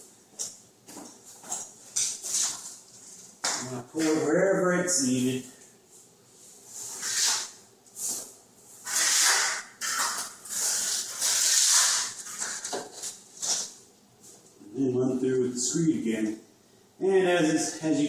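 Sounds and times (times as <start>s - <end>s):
trowel scraping on concrete: 6.8s - 7.6s, 8.8s - 12.8s.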